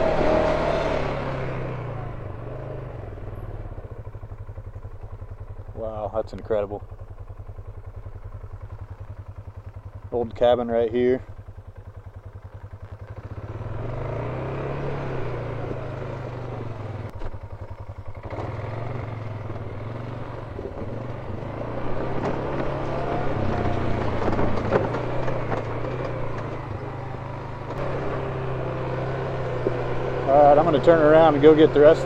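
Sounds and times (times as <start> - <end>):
off-road vehicle engine: 0.0 - 32.0
knocks and rattles over rough ground: 17.1 - 32.0.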